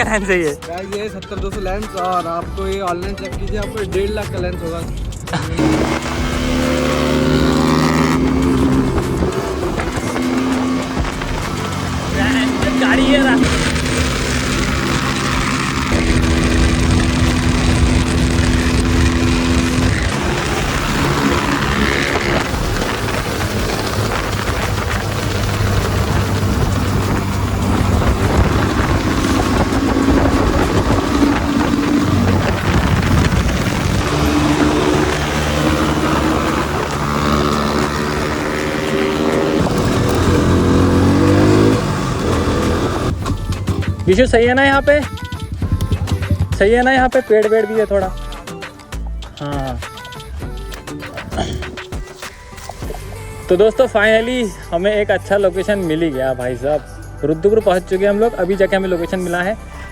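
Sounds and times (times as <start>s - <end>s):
motorcycle engine running: 1.4s - 47.2s
low rumble: 5.0s - 46.8s.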